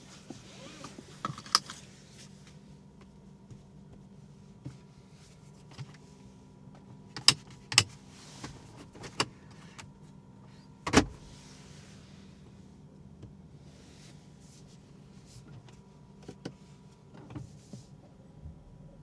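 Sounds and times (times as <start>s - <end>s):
clicks and knocks in car cabin: 6.7s - 9.9s, 10.8s - 11.3s.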